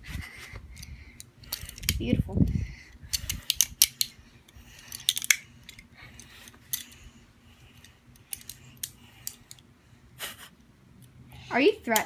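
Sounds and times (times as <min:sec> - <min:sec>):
pocket knife tools clicking: 0:01.5 - 0:02.0, 0:03.1 - 0:04.1, 0:04.8 - 0:07.0, 0:07.8 - 0:09.6.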